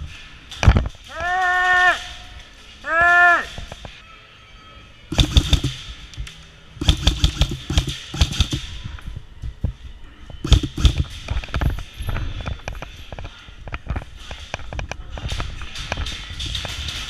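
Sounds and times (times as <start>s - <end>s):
airsoft rifles firing bursts: 5.1s - 6.1s, 6.8s - 8.8s, 10.4s - 11.2s.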